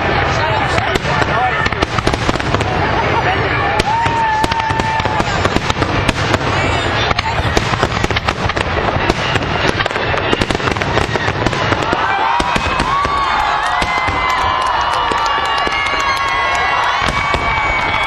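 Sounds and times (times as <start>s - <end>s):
fireworks bangs and crackles: 0.0s - 18.0s
firework whistles: 16.8s - 18.0s.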